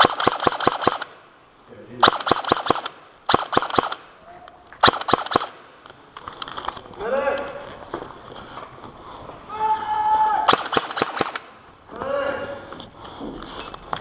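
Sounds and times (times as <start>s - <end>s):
airsoft rifle bursts: 0.0s - 1.2s, 2.0s - 4.1s, 4.8s - 5.6s, 10.5s - 11.6s.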